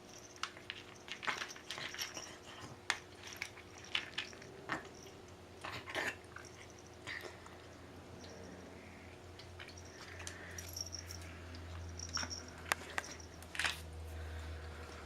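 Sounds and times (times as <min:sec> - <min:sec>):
pet crunching food: 0:00.1 - 0:08.5.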